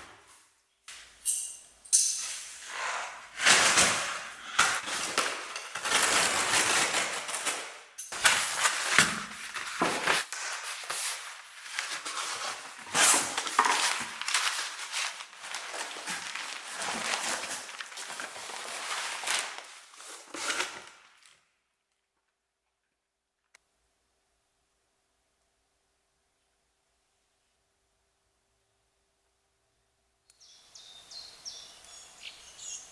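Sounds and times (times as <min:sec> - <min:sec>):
packaging crinkling: 0:03.4 - 0:21.5.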